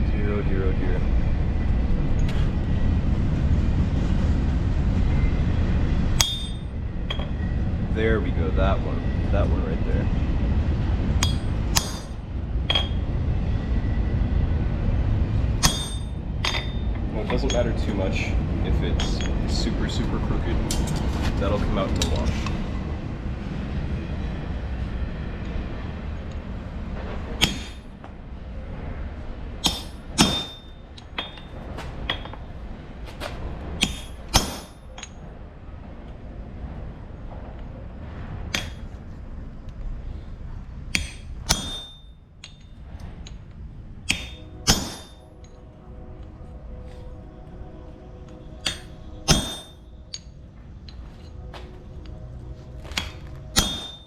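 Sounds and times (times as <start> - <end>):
low rumble: 0.0 - 54.0
hammer striking metal on anvil: 6.2 - 7.4, 11.2 - 13.1, 15.6 - 17.9, 19.0 - 19.6, 27.4 - 27.9, 29.6 - 32.5, 33.8 - 35.2, 38.5 - 39.0, 40.9 - 43.4, 44.1 - 45.6, 48.6 - 50.4, 52.8 - 54.0.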